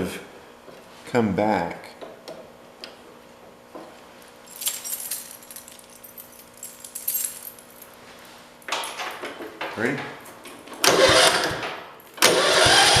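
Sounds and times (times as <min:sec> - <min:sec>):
keys jangling on a ring: 0:04.5 - 0:08.0.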